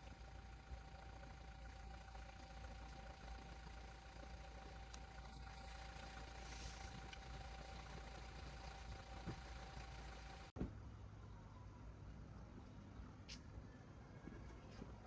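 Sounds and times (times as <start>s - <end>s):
thin steady whine: 0.0s - 10.6s
vehicle engine humming: 0.0s - 15.0s.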